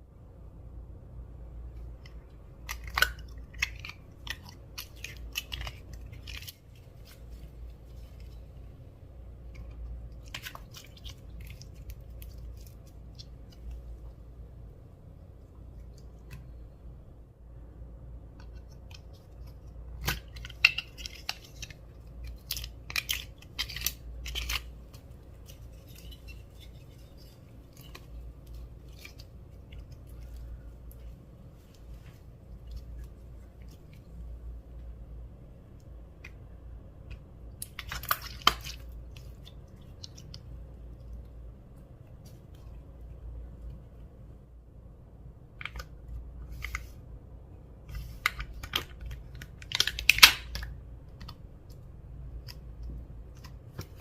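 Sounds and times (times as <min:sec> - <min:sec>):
slime clicking and crackling: 0:02.0 - 0:08.3, 0:37.2 - 0:40.5, 0:48.0 - 0:51.8.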